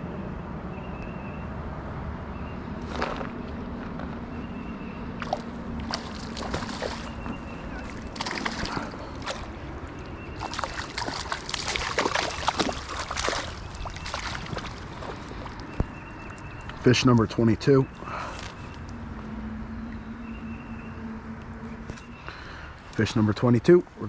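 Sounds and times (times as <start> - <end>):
moving water: 2.8 - 20.4
fish splashing: 5.1 - 16.8.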